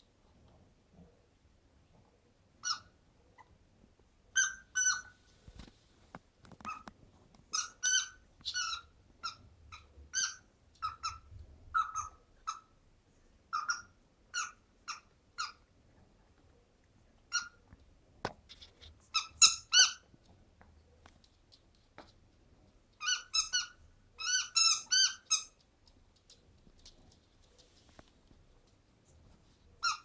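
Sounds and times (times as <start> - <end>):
squeaky dog toy squeaking: 2.6 - 2.9, 4.4 - 5.1, 7.5 - 12.7, 13.5 - 15.6, 19.1 - 20.0, 23.0 - 25.6, 29.8 - 30.0.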